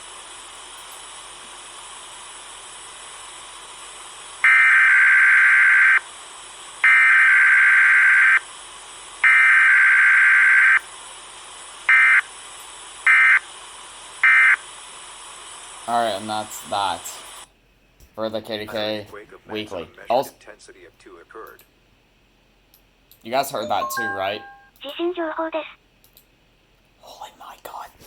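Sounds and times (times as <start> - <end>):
steady hiss: 0.0 - 4.5, 5.5 - 6.9, 8.4 - 9.3, 10.8 - 17.6.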